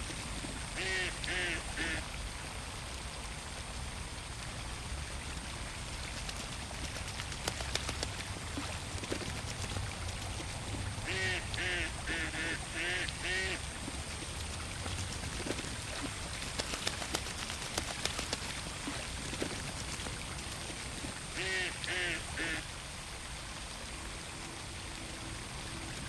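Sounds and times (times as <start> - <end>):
ducks quacking: 0.8 - 2.0, 11.0 - 13.6, 21.4 - 22.6.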